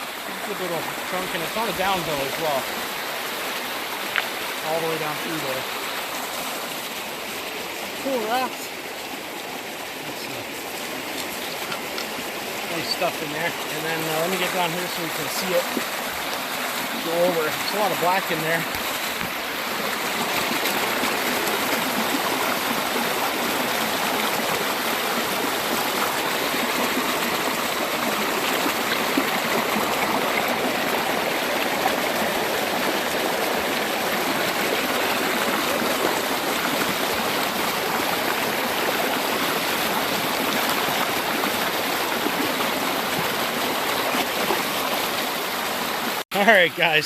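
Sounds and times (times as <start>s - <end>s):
fast brook water rushing: 0.0s - 47.0s.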